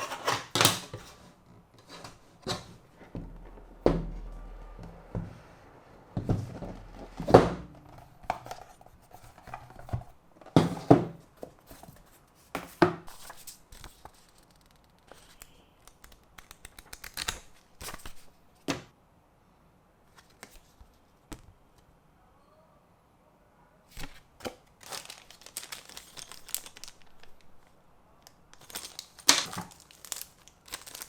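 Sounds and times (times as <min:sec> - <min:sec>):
sharp knocks: 0:03.1 - 0:05.5
packaging rustling and tearing: 0:13.2 - 0:18.2, 0:24.0 - 0:31.0.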